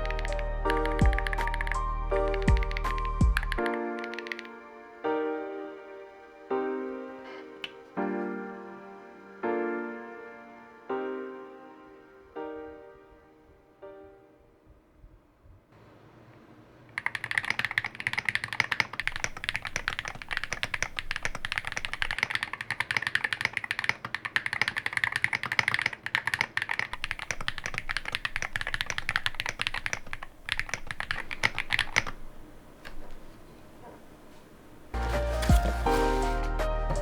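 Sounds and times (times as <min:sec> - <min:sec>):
mechanical keyboard typing: 0:00.0 - 0:04.6, 0:17.0 - 0:33.1.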